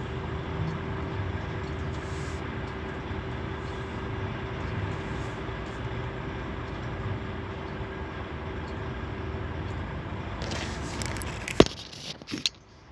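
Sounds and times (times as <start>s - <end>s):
faint hum: 0.0s - 12.7s
low engine rumble: 0.0s - 12.8s
rustling: 10.4s - 12.6s.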